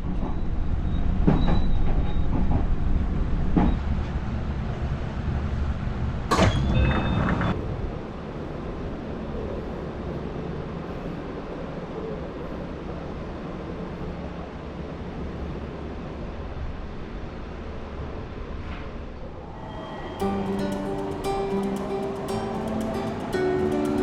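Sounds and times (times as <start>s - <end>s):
train rumbling on rails: 0.0s - 24.0s
sharp rail clacks: 19.4s - 24.0s.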